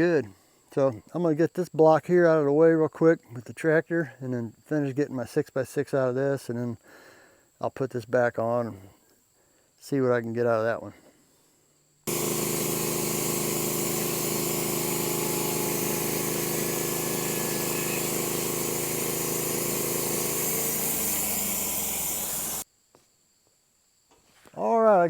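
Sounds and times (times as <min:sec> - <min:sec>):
engine running: 0:12.1 - 0:22.6.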